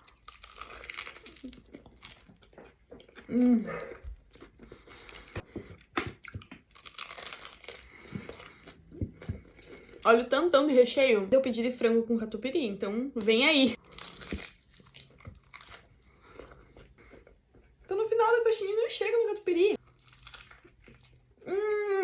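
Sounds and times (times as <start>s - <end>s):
crunchy chewing: 0.0s - 10.0s, 13.8s - 17.9s, 19.8s - 21.5s.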